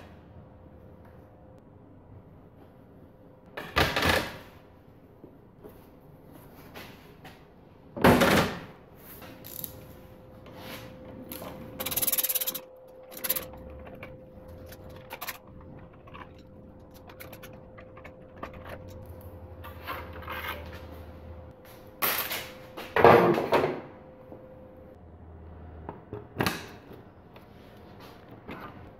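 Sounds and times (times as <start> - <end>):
tools and parts clicking and knocking: 9.4 - 9.8, 11.3 - 20.8.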